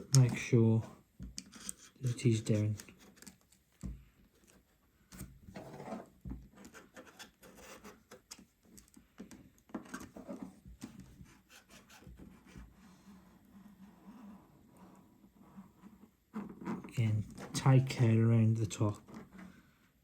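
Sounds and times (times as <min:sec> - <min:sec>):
screwdriver scraping along tape: 0:01.4 - 0:03.5.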